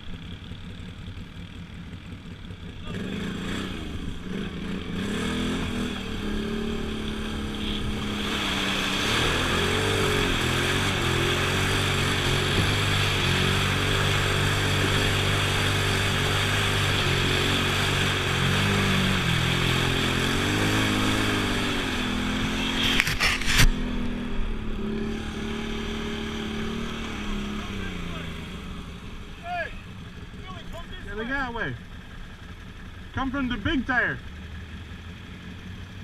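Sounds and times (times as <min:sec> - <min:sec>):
atv engine revving: 0:00.0 - 0:36.0
steady rushing noise: 0:04.0 - 0:32.9.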